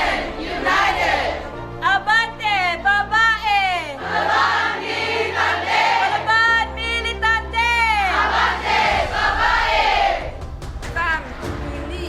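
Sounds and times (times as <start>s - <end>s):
choir singing a hymn: 0.0s - 1.8s, 4.0s - 6.8s, 8.0s - 10.4s.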